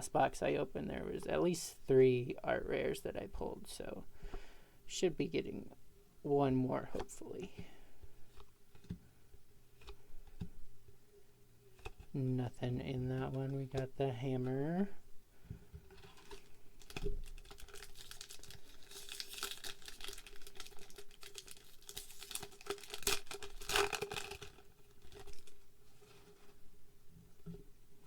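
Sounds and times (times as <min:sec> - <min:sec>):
foil pack crinkling and tearing: 0:15.9 - 0:26.4.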